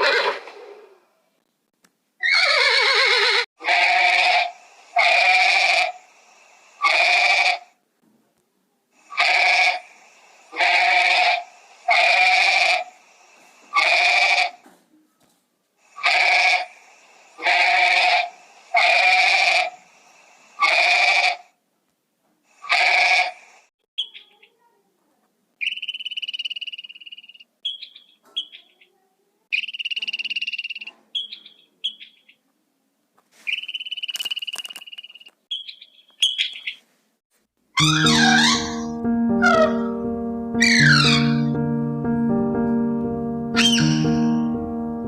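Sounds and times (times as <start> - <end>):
animal calling loudly: 2.2 - 6.0, 6.8 - 7.7, 9.1 - 9.9, 10.5 - 12.9, 13.7 - 14.6, 17.4 - 19.8, 20.6 - 21.5, 22.6 - 23.4, 37.8 - 39.9, 40.6 - 41.5, 43.6 - 44.4.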